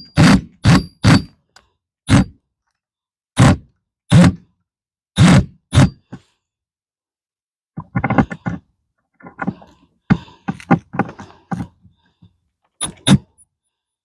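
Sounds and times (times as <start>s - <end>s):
knocks and clunks of tools and wood: 7.8s - 13.5s.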